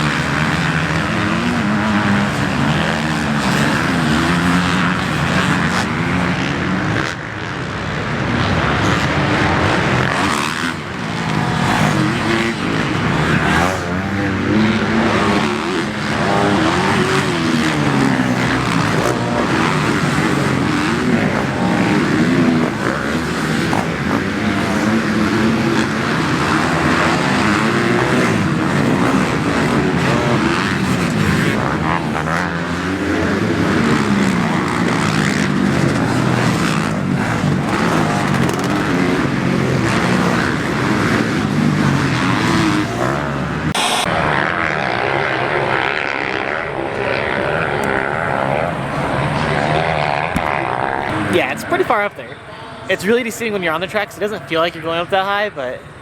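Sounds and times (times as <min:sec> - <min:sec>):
motorbike engines revving: 0:00.0 - 0:56.0.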